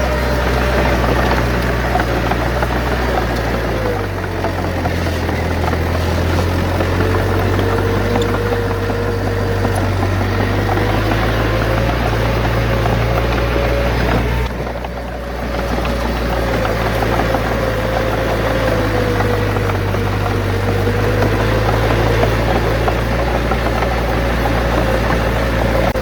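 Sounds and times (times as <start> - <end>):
heavy diesel engine running: 0.0 - 26.0
machinery whine: 0.0 - 26.0.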